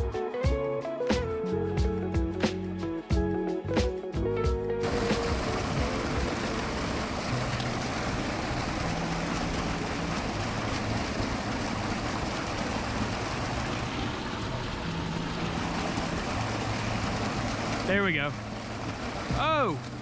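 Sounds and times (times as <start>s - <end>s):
water rushing over spillway: 4.8s - 20.0s.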